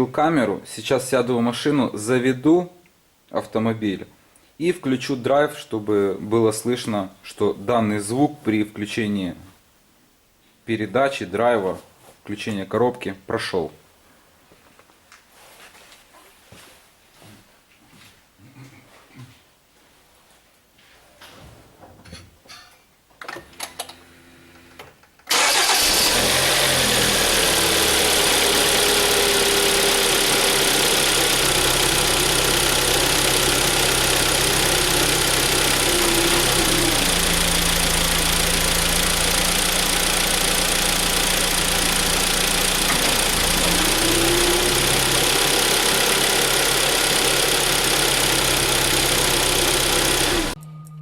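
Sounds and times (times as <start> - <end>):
car engine starting and idling: 25.3 - 50.6.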